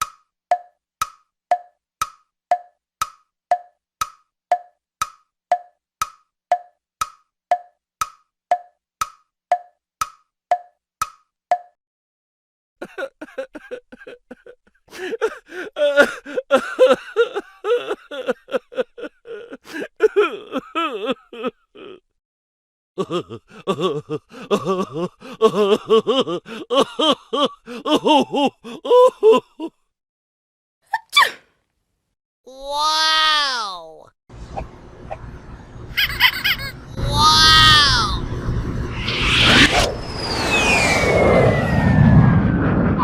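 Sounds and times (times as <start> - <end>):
rapid pulsing laughter: 12.8 - 22.0, 23.0 - 29.7, 35.9 - 37.6.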